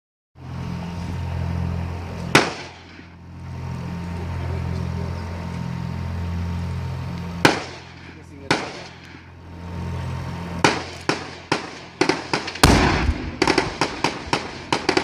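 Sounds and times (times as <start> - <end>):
sharp crack: 2.2 - 3.2, 7.4 - 9.3, 10.6 - 15.0
minigun firing bursts: 2.3 - 3.2, 7.4 - 9.2, 10.6 - 15.0.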